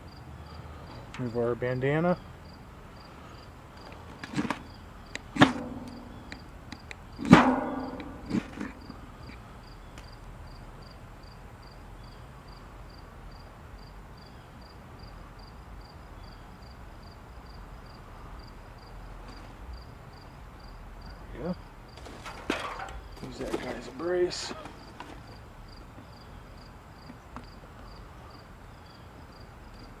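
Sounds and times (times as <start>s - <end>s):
insect chirping: 0.0s - 1.1s, 2.2s - 19.0s, 19.7s - 30.0s
sharp scraping strikes: 5.4s - 6.5s, 7.2s - 8.9s.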